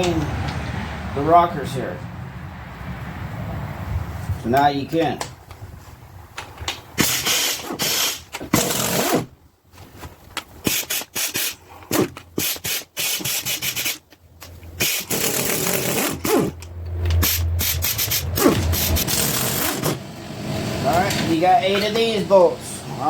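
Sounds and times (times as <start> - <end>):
impact wrench bursts: 7.0 - 9.3, 10.6 - 14.1, 14.7 - 20.1.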